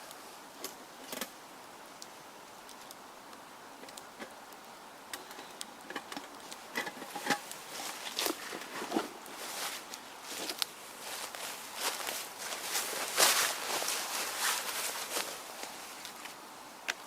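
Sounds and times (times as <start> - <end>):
faint woodland hiss: 0.0 - 17.0
clicks and rustles on forest floor: 3.8 - 17.0.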